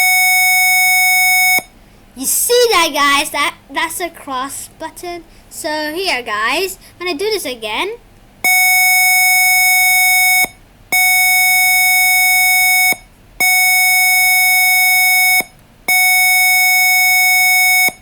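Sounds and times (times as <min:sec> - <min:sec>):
smoke alarm buzzer beeping: 0:00.0 - 0:01.8, 0:08.4 - 0:18.0.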